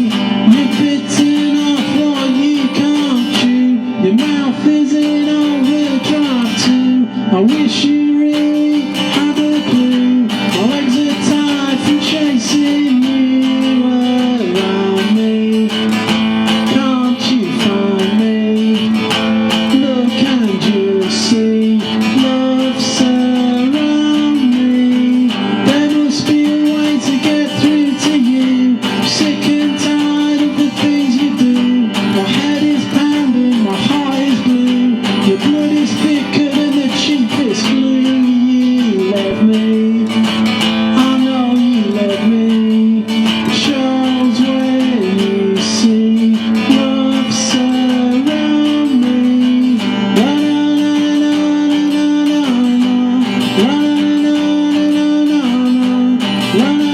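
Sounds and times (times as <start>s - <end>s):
acoustic guitar blues playing: 0.0s - 56.9s.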